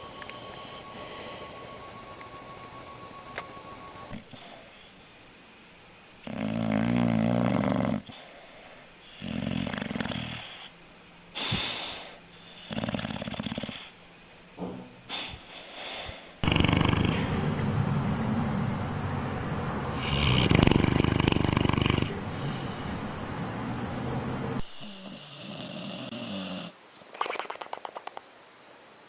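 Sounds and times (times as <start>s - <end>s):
dog snoring: 6.2s - 8.4s, 9.1s - 10.7s, 11.4s - 14.0s, 16.4s - 17.4s, 20.0s - 22.6s, 24.6s - 26.8s
loud steady noise: 16.4s - 24.8s.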